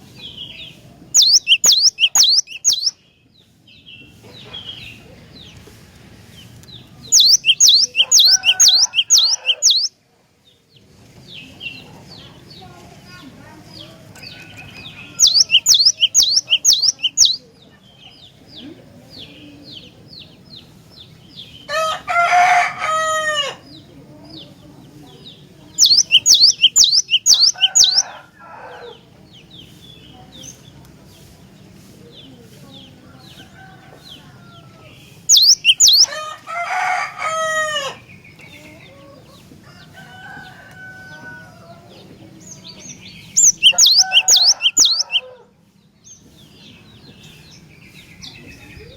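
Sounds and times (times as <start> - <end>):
louder lower bird calls: 1.2 - 3.0, 7.1 - 9.9, 15.1 - 17.4, 25.8 - 28.1, 35.3 - 36.1, 43.4 - 45.2.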